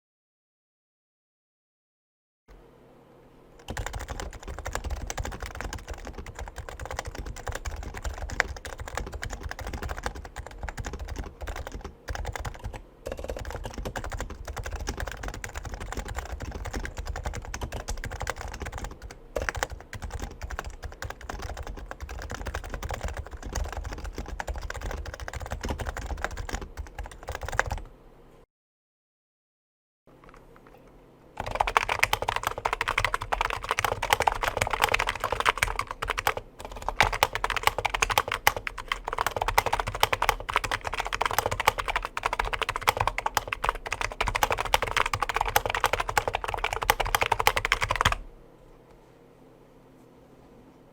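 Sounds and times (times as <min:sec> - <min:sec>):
fast keyboard typing: 0:03.6 - 0:27.9, 0:30.2 - 0:30.8, 0:31.4 - 0:48.3.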